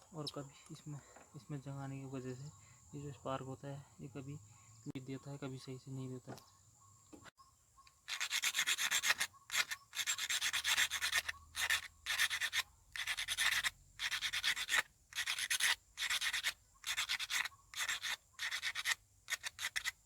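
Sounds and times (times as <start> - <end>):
sandpaper rubbing on metal: 8.1 - 20.0.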